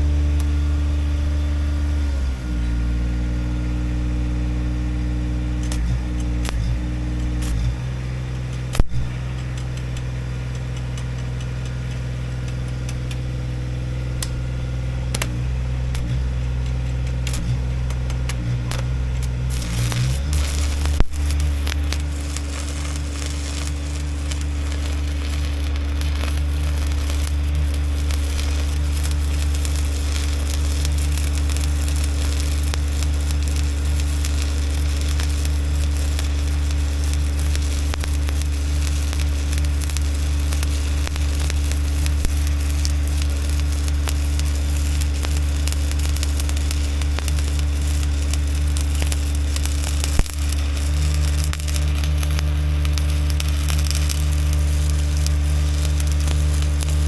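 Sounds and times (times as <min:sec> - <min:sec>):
welder engine humming: 0:00.0 - 0:57.0
welding arc crackling: 0:00.0 - 0:57.0.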